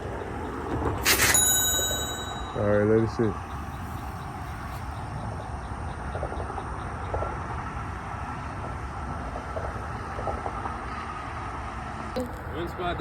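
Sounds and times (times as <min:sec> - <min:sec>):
low rumble of road traffic: 0:00.0 - 0:13.0.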